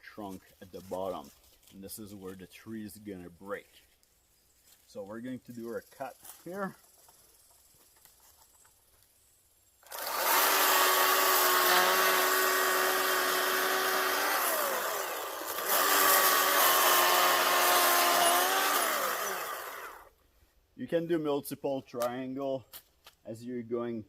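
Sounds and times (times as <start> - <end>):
chainsaw cutting wood: 9.8 - 20.1.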